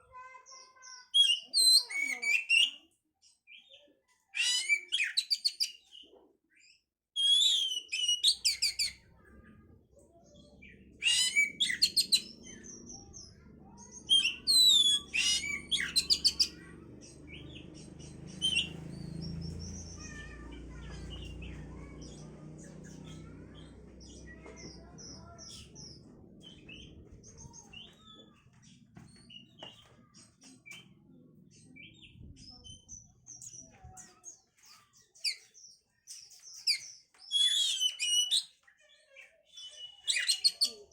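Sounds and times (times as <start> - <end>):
bird singing whistled phrases: 7.2 - 9.0, 11.0 - 12.3, 37.3 - 38.5.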